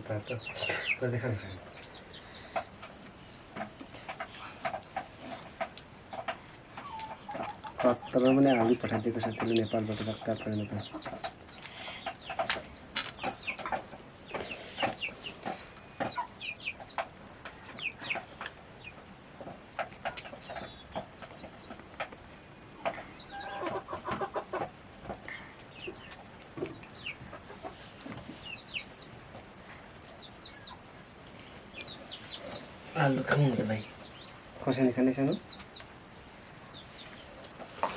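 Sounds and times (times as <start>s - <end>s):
chickens clucking: 0.0s - 37.9s.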